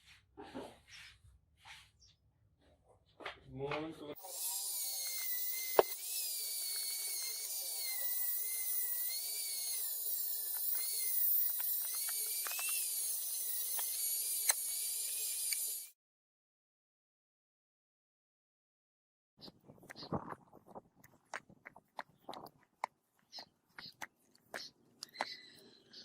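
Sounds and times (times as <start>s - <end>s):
rotary tool whining: 4.2s - 16.0s.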